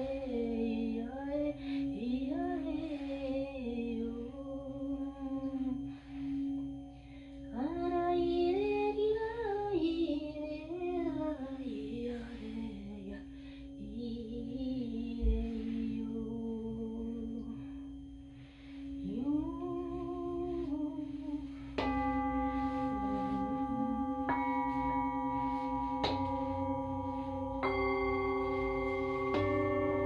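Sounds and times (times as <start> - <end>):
singing bowls ringing: 0.0 - 30.0
singing bowl struck: 18.9 - 30.0
person singing long notes: 19.0 - 30.0.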